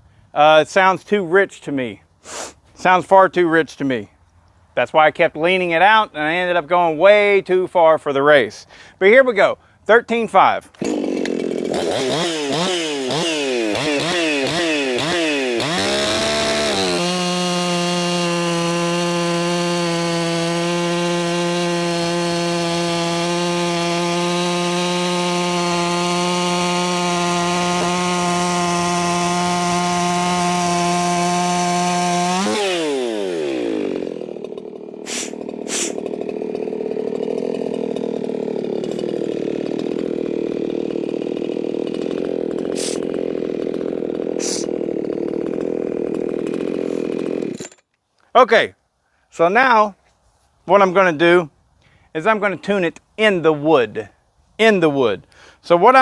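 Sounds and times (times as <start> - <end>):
chainsaw running at full throttle: 10.6 - 47.8
chainsaw idling: 10.6 - 47.9.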